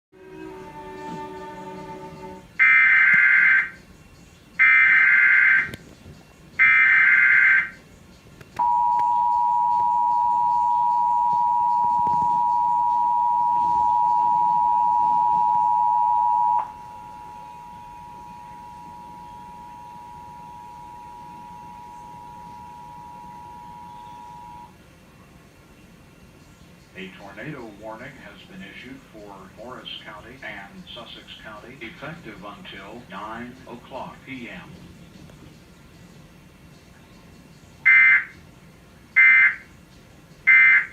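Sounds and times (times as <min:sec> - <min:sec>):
digital data bursts: 0:04.6 - 0:05.8, 0:06.6 - 0:07.8
two-tone attention signal: 0:08.6 - 0:24.8.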